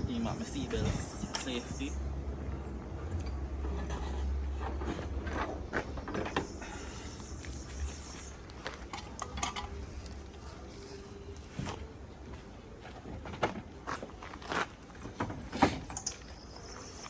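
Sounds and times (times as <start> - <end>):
car parts clinking: 3.1 - 10.4, 14.8 - 16.9.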